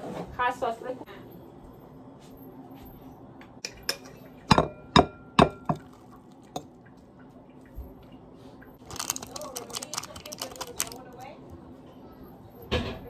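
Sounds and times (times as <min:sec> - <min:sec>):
utensils clinking on cookware: 0:03.6 - 0:06.7.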